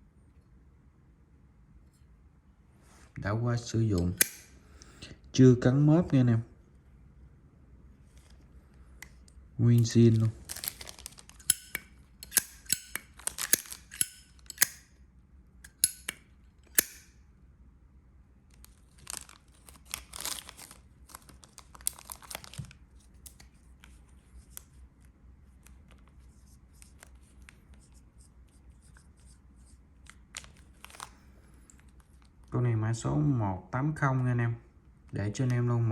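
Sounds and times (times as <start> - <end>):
lighter metallic clicks: 4.0 - 4.9, 11.4 - 14.8, 15.6 - 17.1
packaging rustling and crinkling: 10.0 - 11.5, 13.0 - 13.9, 18.5 - 24.0, 30.3 - 32.5.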